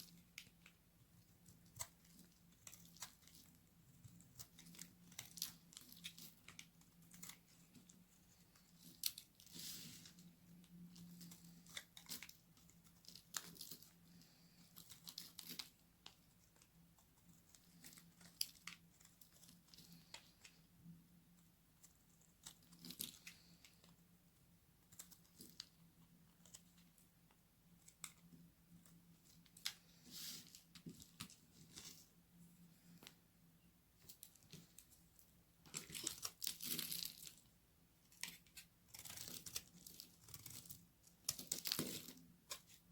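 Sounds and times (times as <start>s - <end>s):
dry soap crunching as cut: 35.7s - 37.4s, 38.2s - 42.9s.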